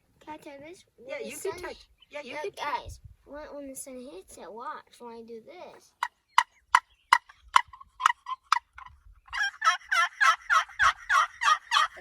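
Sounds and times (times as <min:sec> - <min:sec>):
turkey call clucks: 0:06.0 - 0:12.0
turkey call yelps: 0:06.0 - 0:12.0.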